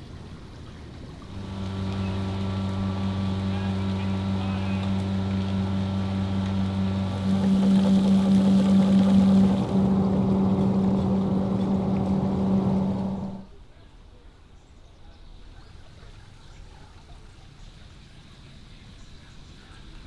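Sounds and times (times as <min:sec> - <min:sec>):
faint outdoor background noise: 0:00.0 - 0:20.0
motor humming loudly: 0:01.2 - 0:13.5.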